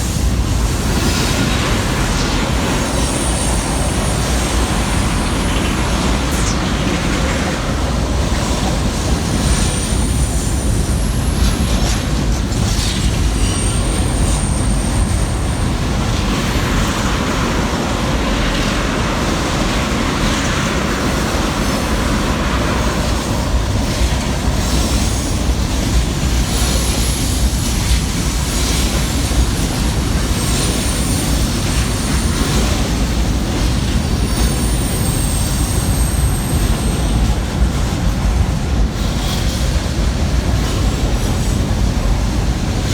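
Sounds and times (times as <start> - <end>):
train wheels rumbling on rail: 0.0 - 42.9
high wheel squeals: 8.4 - 16.0, 26.5 - 37.7.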